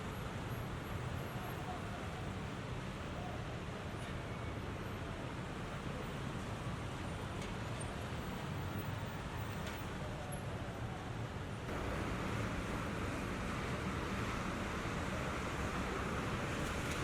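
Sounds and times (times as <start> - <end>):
road traffic noise: 0.0 - 17.0.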